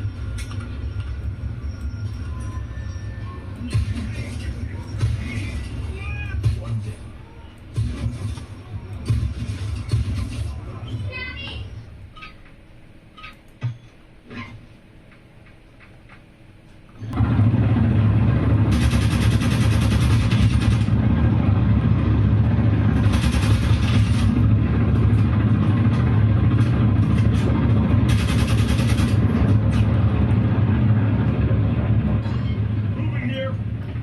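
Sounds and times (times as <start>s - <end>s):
video game engine running: 17.0s - 34.0s.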